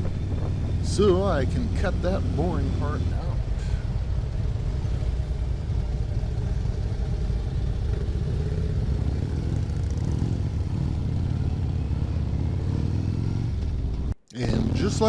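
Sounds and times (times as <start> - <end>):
motorcycle engine running: 0.0 - 15.0
wind and road noise: 0.0 - 15.0.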